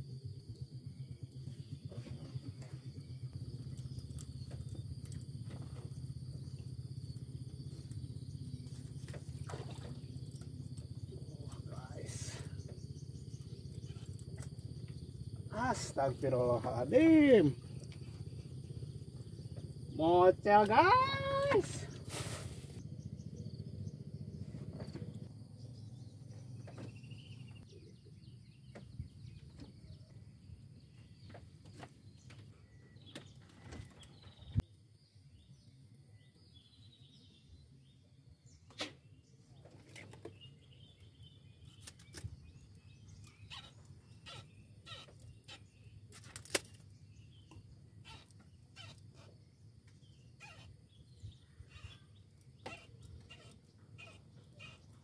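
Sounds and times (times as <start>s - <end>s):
faint bird chirps: 22.8s - 46.1s, 47.0s - 55.0s.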